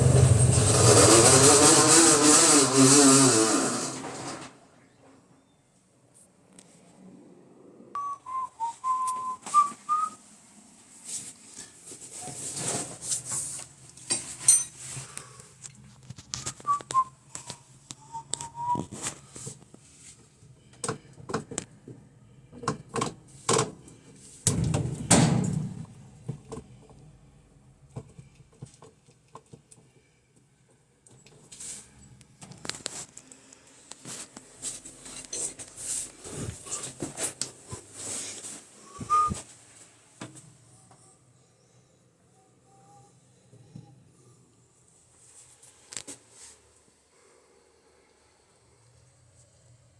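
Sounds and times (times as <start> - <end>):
person whistling: 8.0 - 10.2, 16.6 - 18.9, 38.8 - 39.4.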